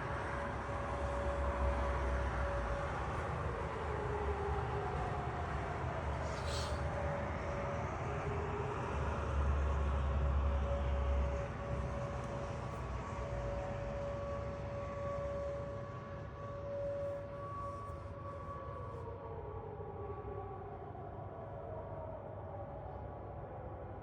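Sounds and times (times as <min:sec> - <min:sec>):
air-raid sirens wailing: 0:00.1 - 0:24.0.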